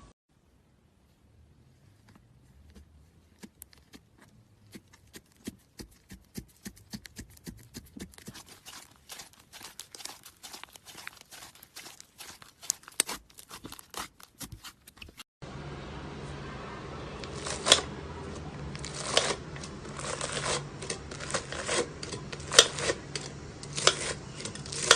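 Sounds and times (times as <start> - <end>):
slime crackling and popping: 5.4 - 15.0.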